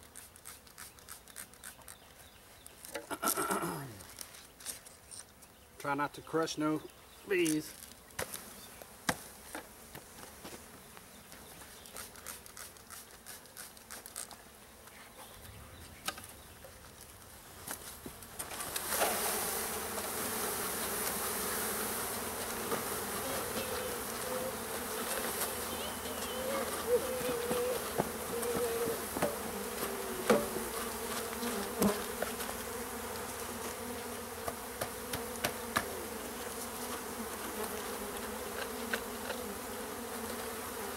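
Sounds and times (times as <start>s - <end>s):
bees buzzing: 17.5s - 40.9s.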